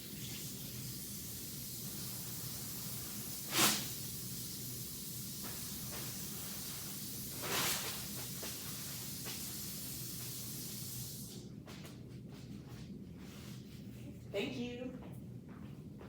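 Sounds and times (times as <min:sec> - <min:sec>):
water running from a tap: 0:00.0 - 0:11.3
short hissing bursts: 0:00.0 - 0:11.4.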